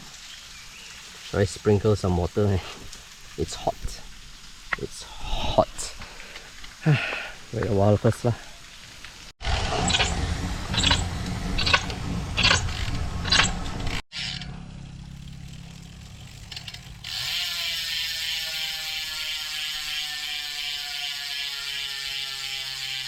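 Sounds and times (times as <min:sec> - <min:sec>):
loud low noise: 0:09.4 - 0:14.0
bicycle freehub ratcheting: 0:09.6 - 0:14.5, 0:16.0 - 0:23.0.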